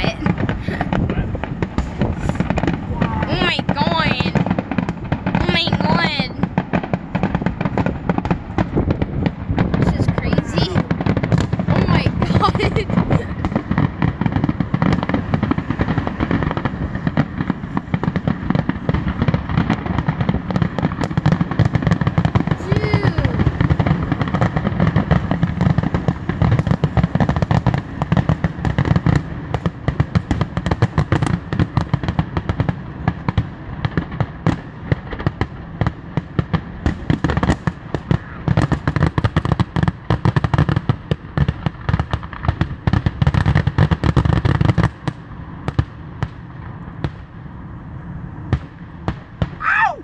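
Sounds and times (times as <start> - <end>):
heavy low rumble: 0.0 - 19.5
fireworks bangs and crackles: 0.0 - 50.0.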